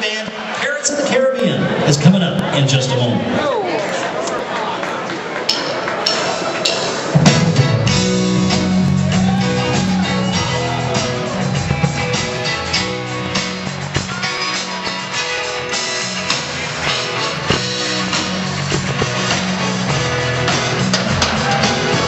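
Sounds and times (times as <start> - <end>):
band playing guitar bass and drums: 6.1 - 22.0.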